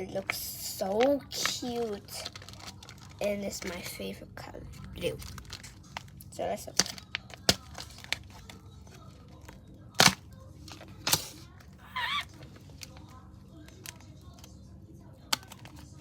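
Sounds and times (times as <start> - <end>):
plastic packaging tearing and crinkling: 0.2 - 4.0, 4.8 - 11.6.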